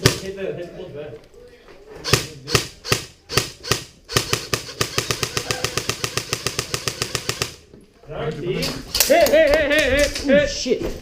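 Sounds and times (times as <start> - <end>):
airsoft gun firing: 2.0 - 7.6.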